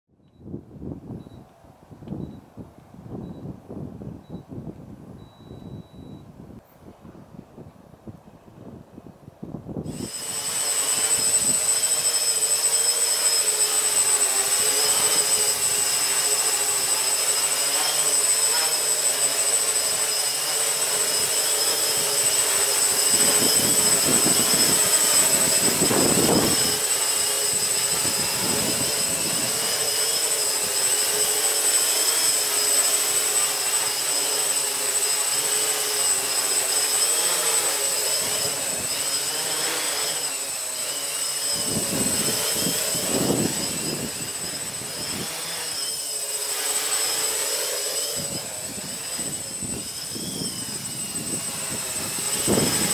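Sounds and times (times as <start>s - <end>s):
wind buffeting microphone: 0.5s - 12.0s, 22.0s - 29.8s, 41.5s - 45.4s, 48.2s - 52.9s
drone propellers whining: 9.8s - 52.9s.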